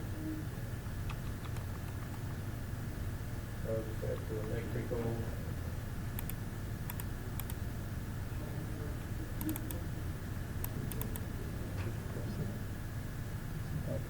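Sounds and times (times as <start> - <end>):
low room hum: 0.0 - 14.0
computer mouse clicking: 1.0 - 2.4, 6.2 - 7.6, 9.4 - 9.8, 10.6 - 11.2.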